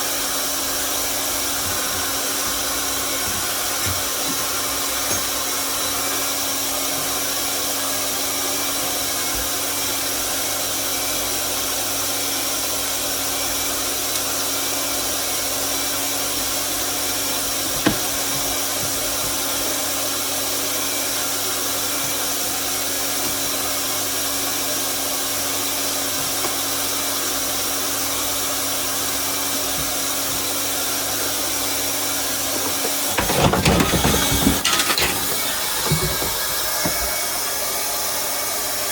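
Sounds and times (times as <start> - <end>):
clatter of knocks: 32.6 - 37.1.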